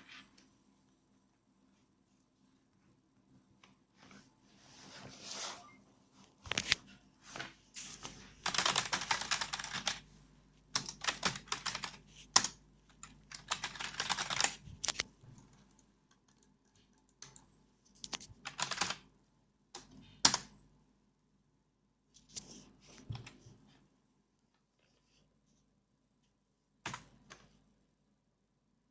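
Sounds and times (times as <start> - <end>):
typing on computer keyboard: 8.4 - 10.0, 10.7 - 19.0.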